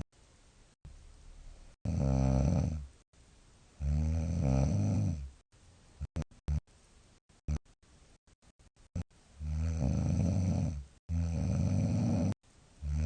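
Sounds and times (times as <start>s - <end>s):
woman snoring heavily: 1.8s - 2.9s, 3.8s - 5.3s, 9.4s - 13.0s.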